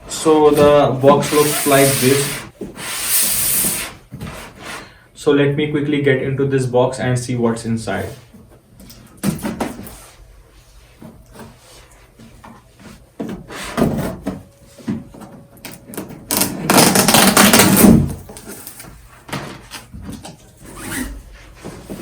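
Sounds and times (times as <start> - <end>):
packaging rustling: 16.3 - 18.8.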